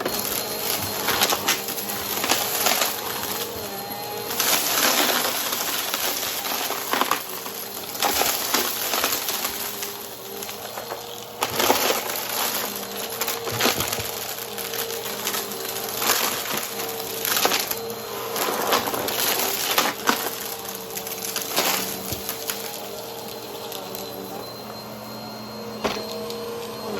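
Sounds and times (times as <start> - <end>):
vacuum cleaner motor hum: 0.0 - 26.9
debris crackling and snapping: 4.3 - 9.7, 10.4 - 17.8.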